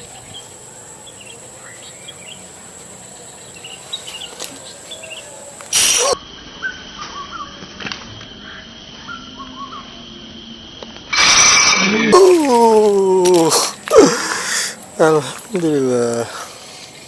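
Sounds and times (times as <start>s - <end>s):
small birds chirping: 0.0s - 5.6s
high insect buzz: 0.0s - 17.0s.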